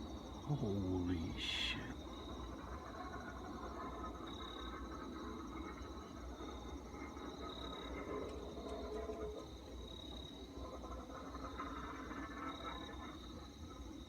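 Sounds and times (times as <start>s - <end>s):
crickets trilling: 0.2s - 2.2s.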